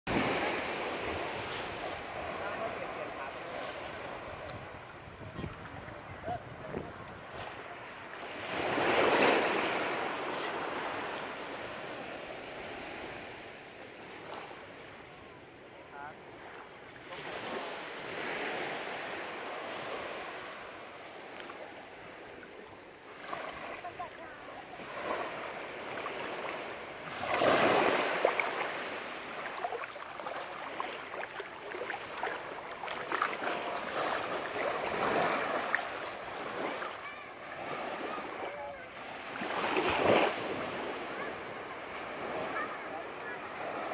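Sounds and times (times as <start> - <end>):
sea wave breaking: 0.1 - 4.5, 23.1 - 43.9.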